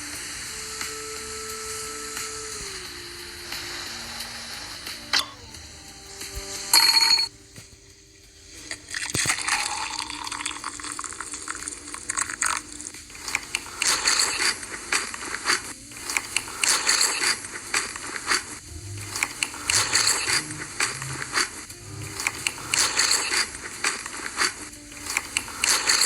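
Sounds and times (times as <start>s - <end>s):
crunchy food chewing: 8.5s - 26.0s.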